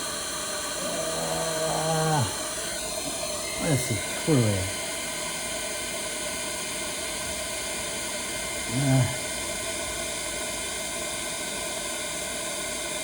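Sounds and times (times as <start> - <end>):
induction heater and fan hissing: 0.0 - 13.0
man saying hmm: 3.6 - 4.7, 8.7 - 9.3.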